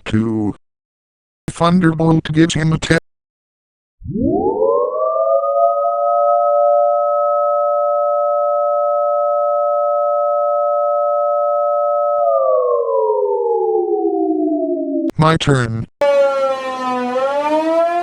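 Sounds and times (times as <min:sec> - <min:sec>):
outdoor warning siren: 0:04.0 - 0:15.1, 0:16.0 - 0:18.0.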